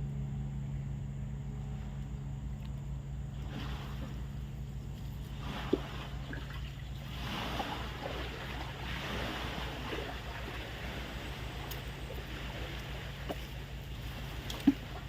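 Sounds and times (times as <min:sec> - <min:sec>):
steady low hum: 0:00.0 - 0:15.0
river water rushing: 0:05.3 - 0:15.0.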